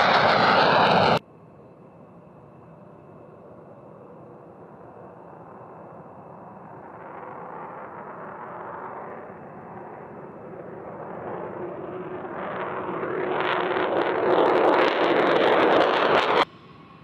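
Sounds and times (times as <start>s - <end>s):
engine crackling: 0.0s - 1.2s, 5.6s - 16.5s
fighter jet engine roaring: 0.0s - 1.2s, 4.0s - 16.5s.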